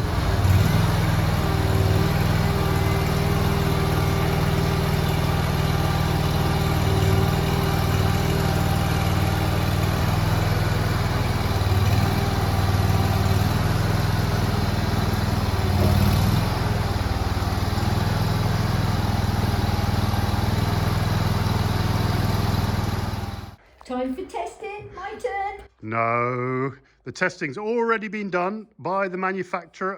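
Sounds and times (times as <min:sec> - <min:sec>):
small engine running: 0:00.0 - 0:23.6.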